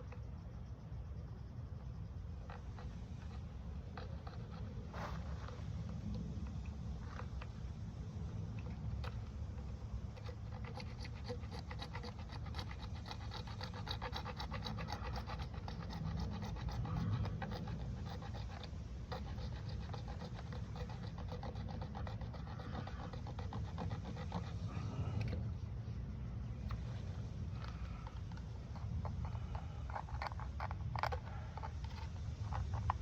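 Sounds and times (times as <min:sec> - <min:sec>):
steady low rumble: 0:00.0 - 0:33.0.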